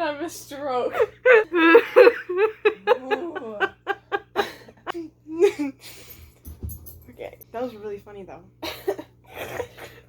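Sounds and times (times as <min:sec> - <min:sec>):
women laughing uncontrollably: 0:01.0 - 0:05.8.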